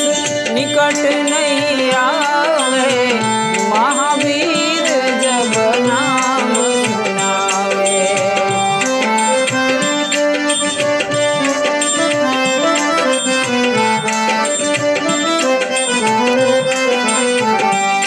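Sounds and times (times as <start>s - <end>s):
reed-like melody: 0.0s - 18.0s
tabla rhythm: 0.0s - 18.0s.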